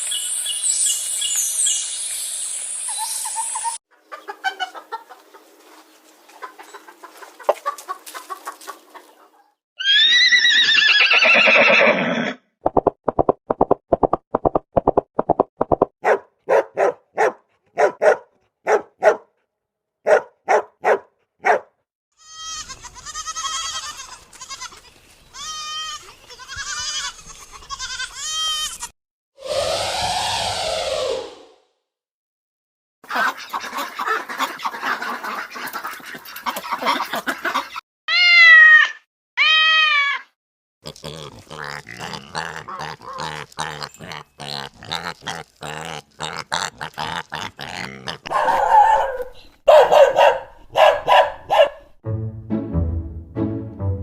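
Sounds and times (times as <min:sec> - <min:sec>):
animal bleat: 0:22.2 - 0:28.9, 0:38.1 - 0:40.2, 0:40.8 - 0:48.3
warbling bird-like calls: 0:29.4 - 0:31.5.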